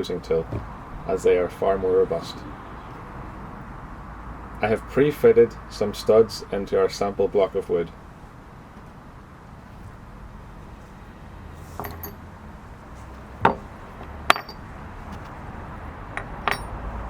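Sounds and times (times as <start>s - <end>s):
sharp clinks and light knocks: 11.8s - 12.2s, 13.4s - 13.7s, 14.3s - 15.3s, 16.1s - 17.0s.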